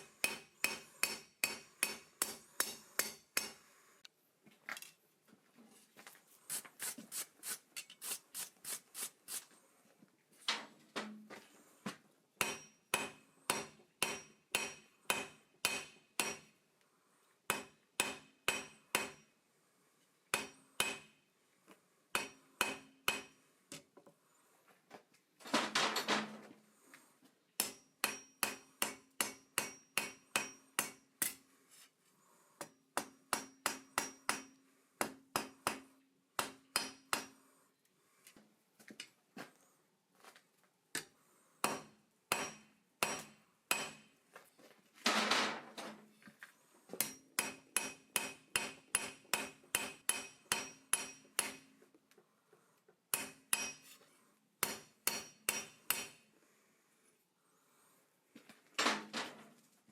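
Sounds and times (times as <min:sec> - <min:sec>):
hammer blows on anvil: 0:53.1 - 0:53.8.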